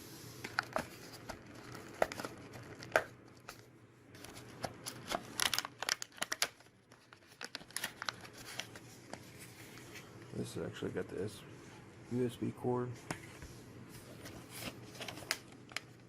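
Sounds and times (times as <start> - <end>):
packaging crinkling: 4.2 - 10.0, 14.2 - 16.0.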